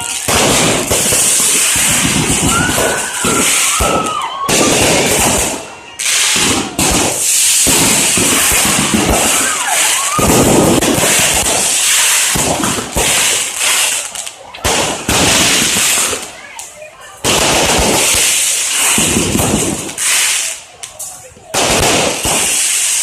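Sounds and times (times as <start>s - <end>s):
fireworks bangs: 0.0s - 23.0s
fireworks crackling: 0.0s - 23.0s.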